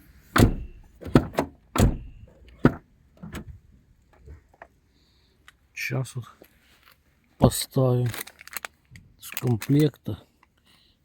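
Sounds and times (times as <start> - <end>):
car door thuds: 0.3 - 3.6.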